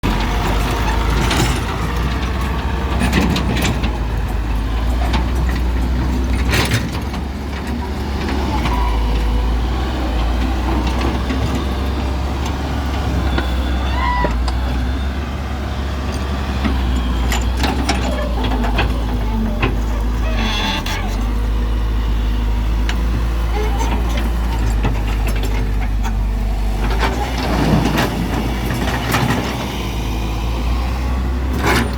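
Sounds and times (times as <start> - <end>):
diesel engine running: 0.0 - 31.9.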